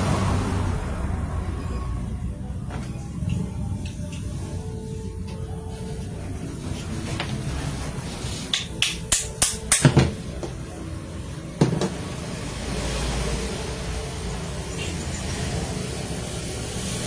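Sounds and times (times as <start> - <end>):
low rumble: 0.0 - 4.9.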